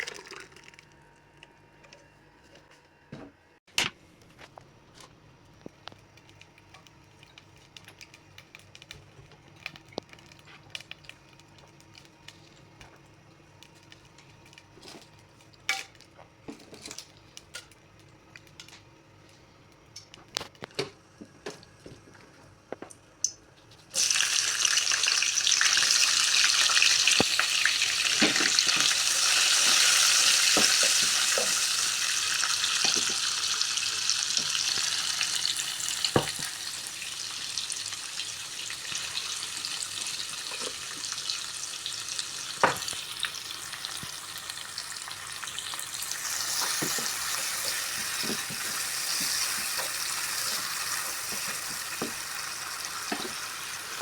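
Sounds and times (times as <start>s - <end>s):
food sizzling in hot oil: 23.9s - 54.0s.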